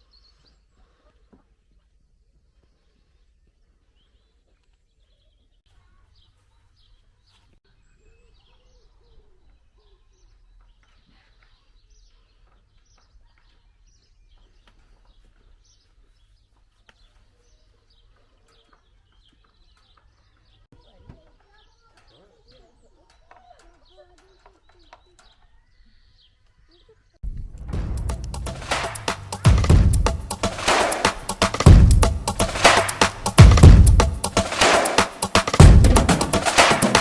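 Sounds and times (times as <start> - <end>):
steady low rumble: 27.2 - 30.3.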